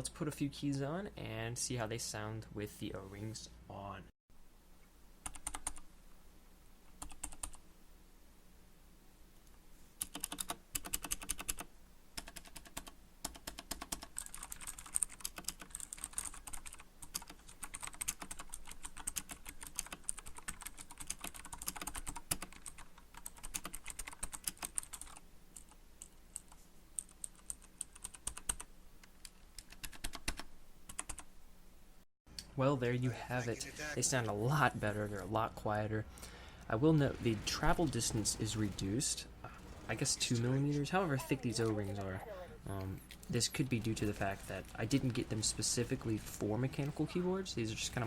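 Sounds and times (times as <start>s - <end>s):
mechanical keyboard typing: 5.2s - 5.8s, 7.0s - 7.6s, 10.0s - 31.2s.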